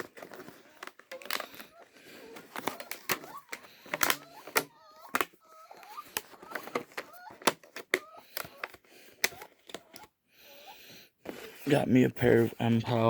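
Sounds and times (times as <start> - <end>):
packaging clicks and rustles: 0.0 - 11.7
puppies whining: 0.0 - 11.7.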